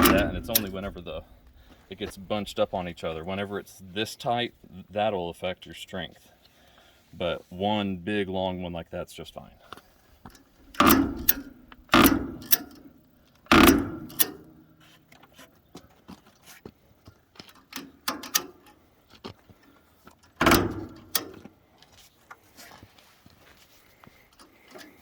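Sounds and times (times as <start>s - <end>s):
ratchet and hook clicks and rattles: 0.0s - 1.6s, 10.3s - 12.9s
loud metal knocks: 0.0s - 2.8s, 10.7s - 12.6s, 13.5s - 14.2s.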